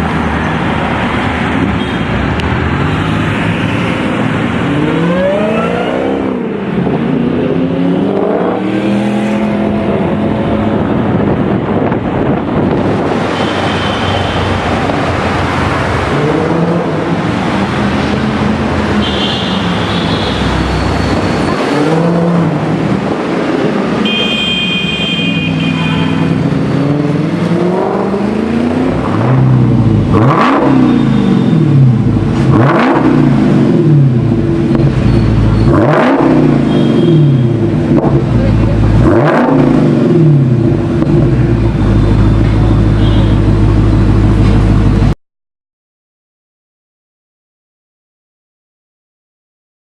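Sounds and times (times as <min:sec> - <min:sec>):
car engine revving and idling: 0:20.4 - 0:24.1, 0:26.2 - 0:45.2.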